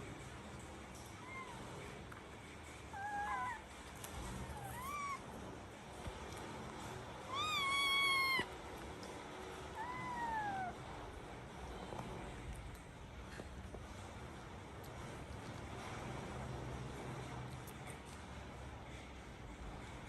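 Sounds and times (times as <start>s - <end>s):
cat meowing: 2.9s - 3.7s, 4.3s - 5.2s, 7.2s - 8.5s, 9.7s - 10.8s.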